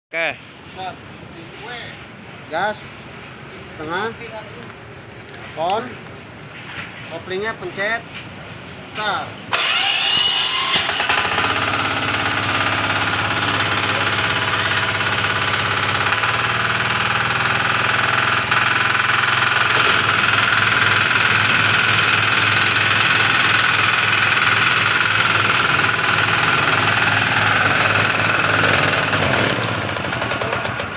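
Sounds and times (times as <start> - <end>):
diesel engine running: 8.4 - 30.9.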